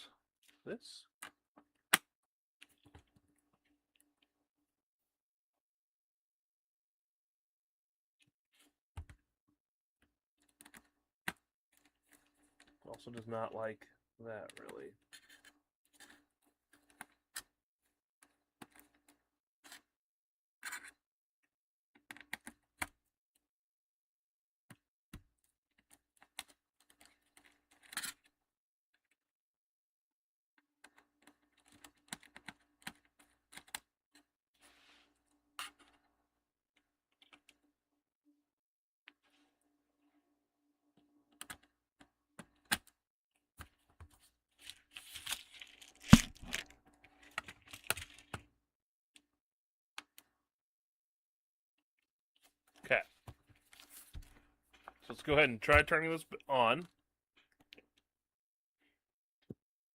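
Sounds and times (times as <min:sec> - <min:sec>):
small clicks of screws and plastic: 0:30.8 - 0:34.3, 0:41.3 - 0:43.0.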